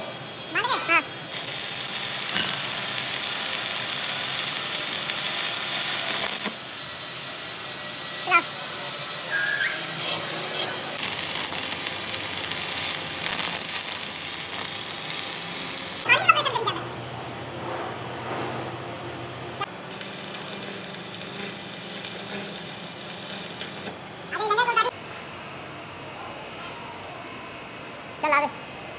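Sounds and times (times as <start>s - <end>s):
loud steady hissing: 0.0s - 9.8s, 11.0s - 16.7s, 18.9s - 24.9s.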